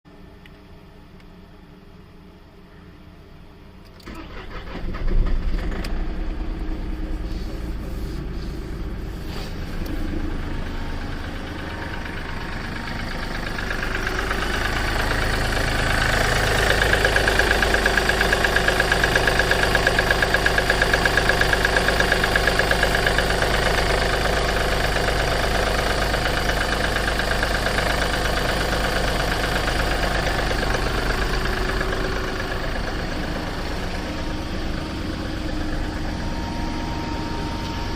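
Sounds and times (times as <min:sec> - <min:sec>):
diesel engine starting and idling: 0:03.8 - 0:37.9
engine knocking: 0:10.1 - 0:37.1.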